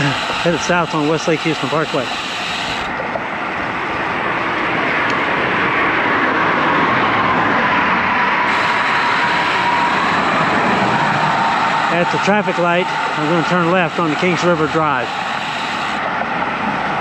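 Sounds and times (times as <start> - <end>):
faint hum: 0.0 - 5.5, 8.2 - 16.1
passing car traffic: 0.0 - 17.0.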